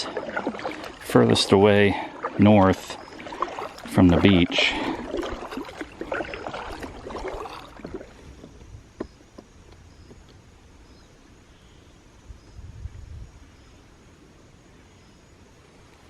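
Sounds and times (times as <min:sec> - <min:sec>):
water dripping: 0:00.0 - 0:08.2
paddle strokes splashing: 0:00.0 - 0:10.4.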